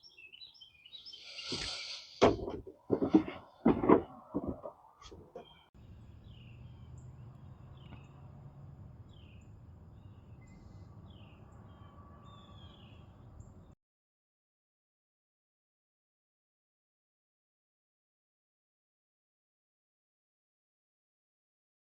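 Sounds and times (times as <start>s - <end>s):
birds chirping: 0.0s - 13.8s
low outdoor background noise: 0.0s - 13.8s
knocking: 1.5s - 5.5s.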